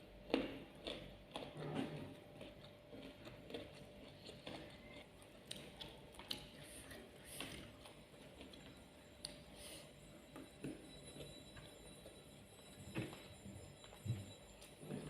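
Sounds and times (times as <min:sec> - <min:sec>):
person chewing with wet smacks: 0:00.0 - 0:09.5.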